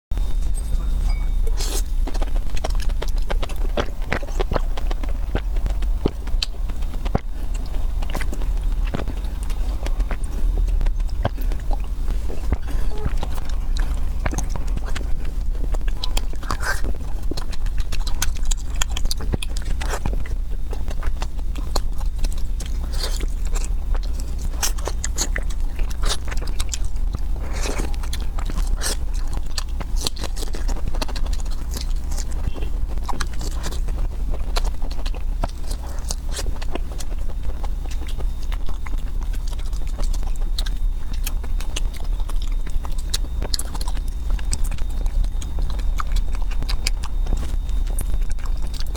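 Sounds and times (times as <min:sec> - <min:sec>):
steady low hum: 0:00.0 - 0:48.9
person biting and chewing: 0:00.2 - 0:48.9.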